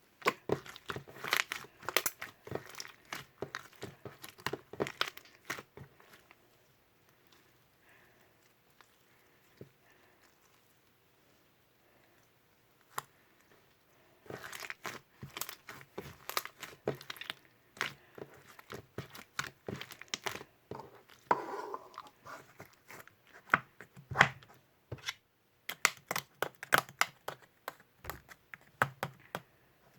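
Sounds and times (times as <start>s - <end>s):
slime crackling and popping: 0.2s - 5.7s, 14.3s - 20.5s, 25.7s - 29.1s.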